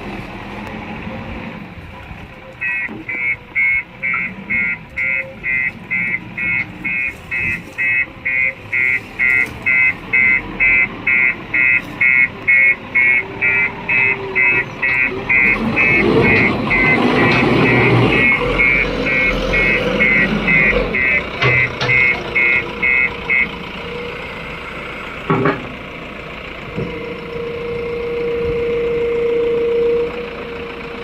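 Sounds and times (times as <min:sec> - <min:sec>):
diesel engine running: 0:00.0 - 0:31.0
vehicle reversing alarm beeping: 0:02.4 - 0:31.0.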